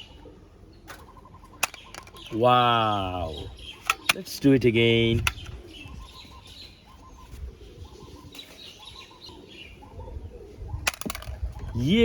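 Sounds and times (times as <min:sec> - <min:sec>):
faint birds chirping: 0:00.0 - 0:12.0.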